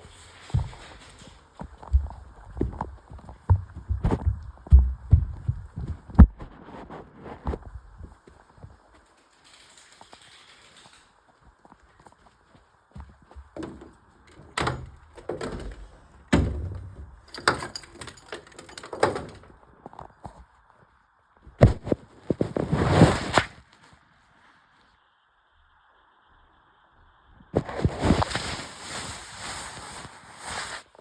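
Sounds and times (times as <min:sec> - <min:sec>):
irregular knocks and bangs: 0:00.4 - 0:06.4, 0:13.4 - 0:19.5.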